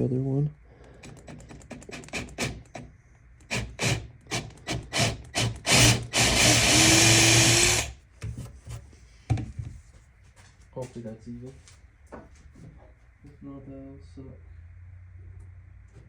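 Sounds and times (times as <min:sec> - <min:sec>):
electric drill boring into wood: 0:01.0 - 0:02.8, 0:03.5 - 0:08.0.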